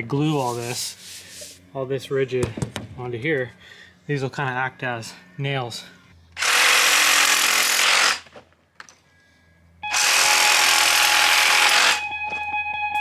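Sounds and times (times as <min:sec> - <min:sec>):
power tool cutting: 0:06.4 - 0:08.2, 0:09.9 - 0:12.1.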